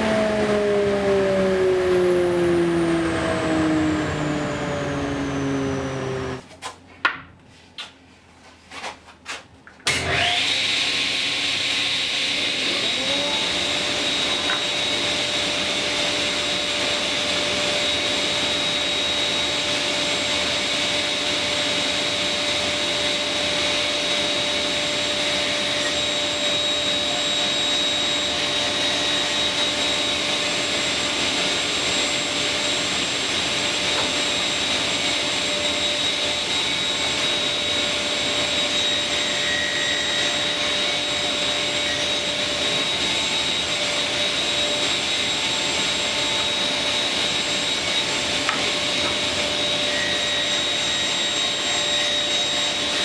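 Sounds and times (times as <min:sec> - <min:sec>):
motor spinning down: 0:00.0 - 0:06.4, 0:10.1 - 0:19.7
dust extraction vacuum whining: 0:00.0 - 0:06.5, 0:09.9 - 0:53.0.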